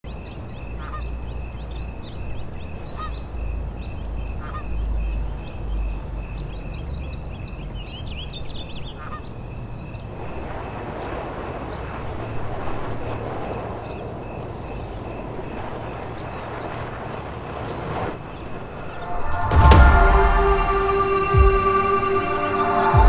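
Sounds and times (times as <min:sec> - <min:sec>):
steady rushing noise: 0:18.2 - 0:23.0
low rumble: 0:18.5 - 0:23.0.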